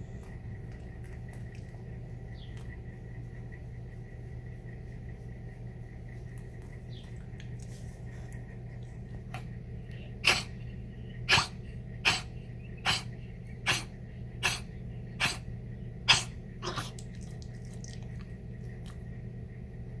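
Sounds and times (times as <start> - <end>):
small dog coughing: 10.2 - 10.6, 11.2 - 17.3.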